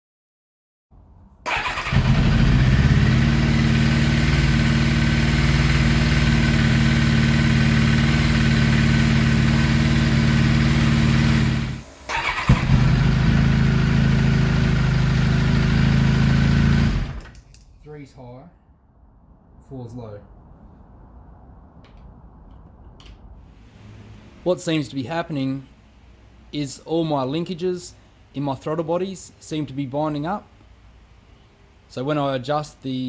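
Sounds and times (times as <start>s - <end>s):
motorcycle engine starting and idling: 1.4s - 17.7s, 21.9s - 28.5s.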